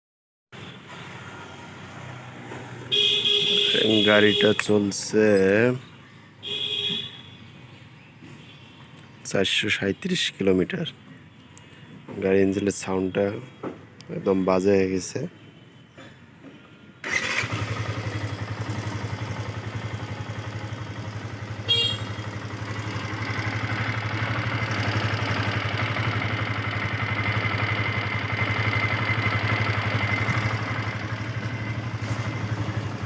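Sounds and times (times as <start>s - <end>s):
motorcycle engine starting and idling: 17.0s - 33.0s.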